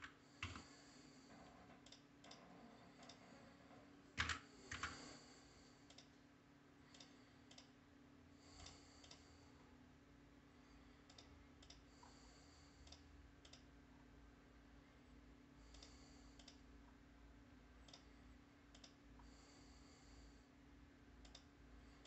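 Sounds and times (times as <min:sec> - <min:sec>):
faint mechanical keyboard keystrokes: 0:04.2 - 0:05.0.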